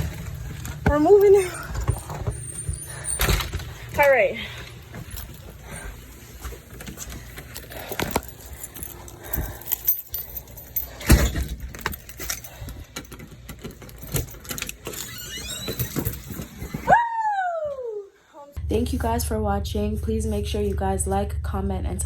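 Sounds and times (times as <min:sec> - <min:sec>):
handling clicks and rattles: 0:06.5 - 0:16.7.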